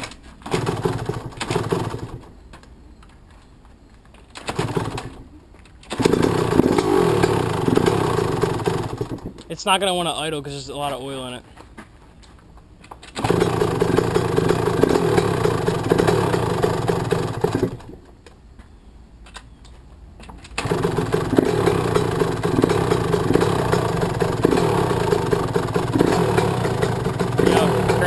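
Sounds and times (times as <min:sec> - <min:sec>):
two-stroke engine running: 0:00.5 - 0:02.3, 0:04.5 - 0:05.2, 0:06.0 - 0:09.4, 0:13.2 - 0:18.0, 0:20.6 - 0:28.0.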